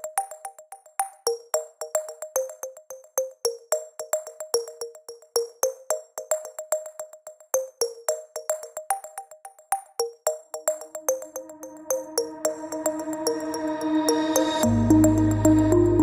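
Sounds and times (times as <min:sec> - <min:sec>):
plucked synth notes: 0:14.6 - 0:16.0.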